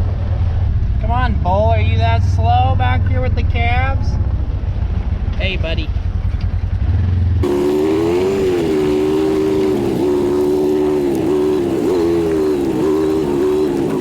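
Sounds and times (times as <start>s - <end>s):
motor whining hum: 7.4s - 14.0s.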